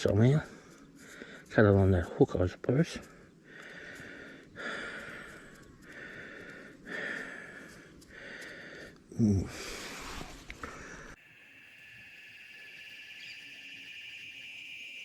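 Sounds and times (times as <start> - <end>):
man breathing heavily: 0.4 - 1.5, 3.0 - 11.2.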